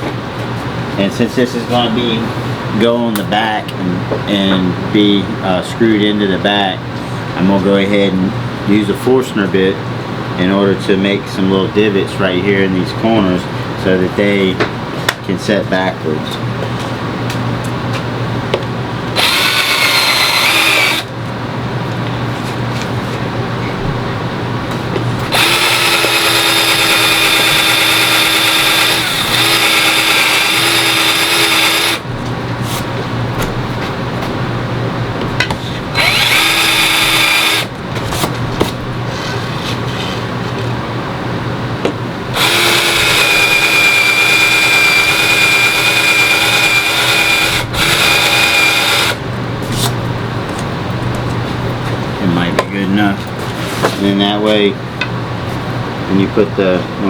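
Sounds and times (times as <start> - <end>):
power drill whine: 19.2 - 21.1, 25.3 - 32.0, 35.9 - 37.7, 42.3 - 49.2.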